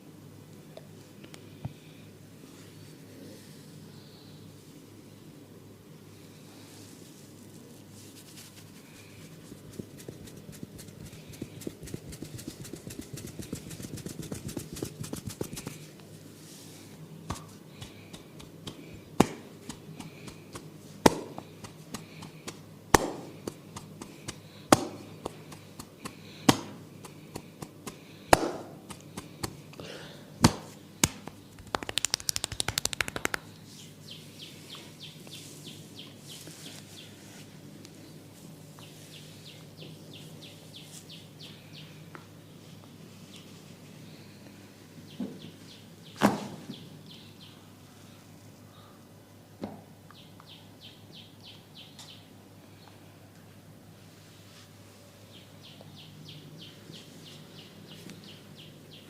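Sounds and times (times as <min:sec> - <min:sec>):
fast hand tapping: 0:09.6 - 0:15.8, 0:17.3 - 0:29.6, 0:30.4 - 0:33.5
sharp hand smacks: 0:17.3 - 0:25.0, 0:30.4 - 0:33.5.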